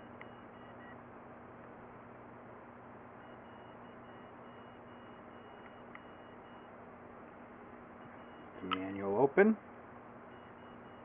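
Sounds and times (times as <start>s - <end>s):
faint low hum: 0.0s - 11.0s
faint pulsing high tone: 10.3s - 11.0s.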